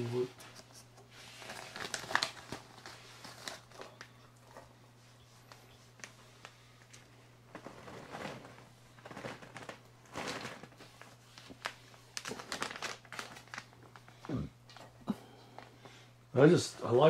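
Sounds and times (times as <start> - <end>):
plastic bag crinkling: 1.3 - 4.6, 7.5 - 14.3.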